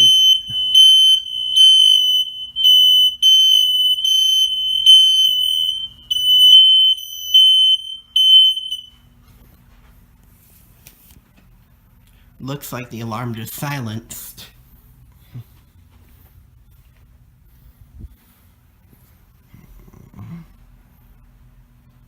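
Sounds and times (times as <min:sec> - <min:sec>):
smoke alarm pulsing tone: 0:00.0 - 0:09.0.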